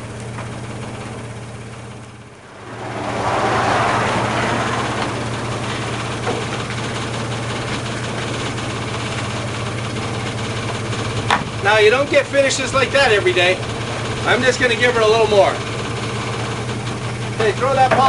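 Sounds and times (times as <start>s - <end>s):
vehicle engine running: 0.0s - 18.0s
rushing noise: 2.3s - 7.6s.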